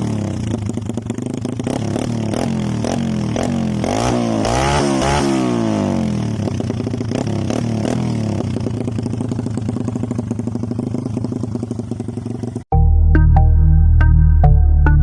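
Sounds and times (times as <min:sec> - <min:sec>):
mini bike engine revving and idling: 0:00.0 - 0:12.7.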